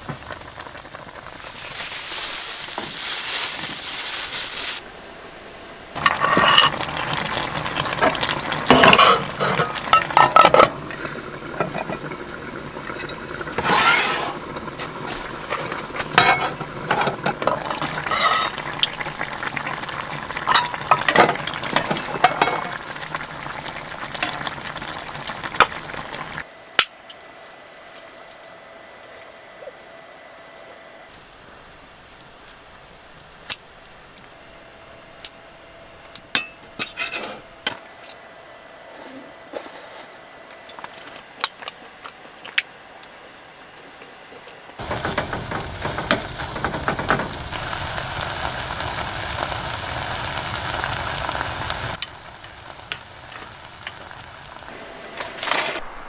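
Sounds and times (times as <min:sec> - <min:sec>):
food sizzling in a pan: 0:00.0 - 0:26.4, 0:44.8 - 0:56.0
utensil scraping a pan: 0:08.7 - 0:10.8, 0:12.9 - 0:18.7.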